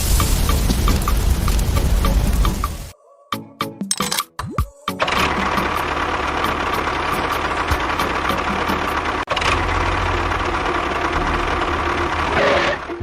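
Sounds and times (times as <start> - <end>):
engine running steadily: 5.0 - 13.0.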